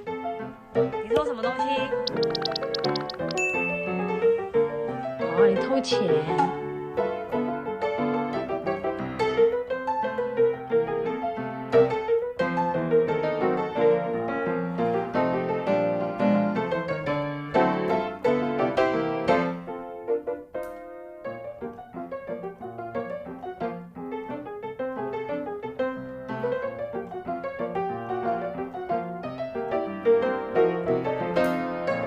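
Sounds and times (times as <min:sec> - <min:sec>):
piano music: 0:00.0 - 0:32.0.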